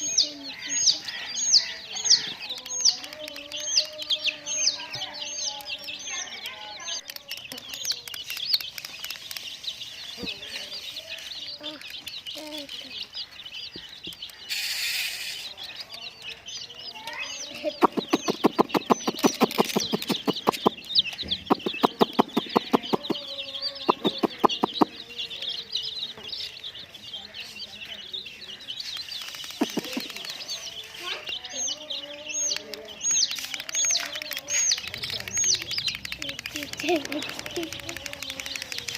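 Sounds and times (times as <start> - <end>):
baby chicks peeping: 0.0 - 38.9
fast clucking pulses: 17.7 - 25.0, 29.3 - 30.4.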